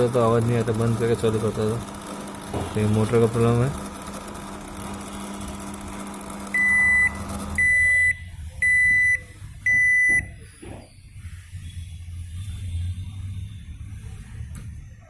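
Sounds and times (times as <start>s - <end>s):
microwave oven humming: 0.0s - 10.8s
loud microwave beeps: 6.5s - 11.1s.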